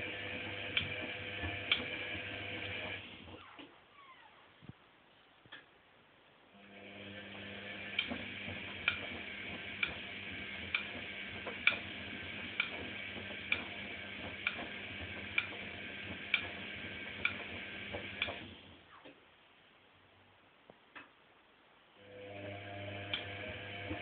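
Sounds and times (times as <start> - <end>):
washing machine motor humming: 0.0 - 3.4, 6.5 - 18.8, 22.0 - 24.0.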